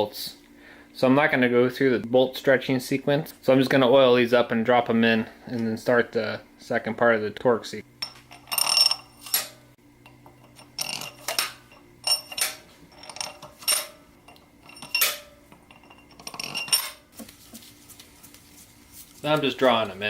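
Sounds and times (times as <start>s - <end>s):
metal bolts clinking and ringing: 8.0s - 9.6s, 10.4s - 17.0s.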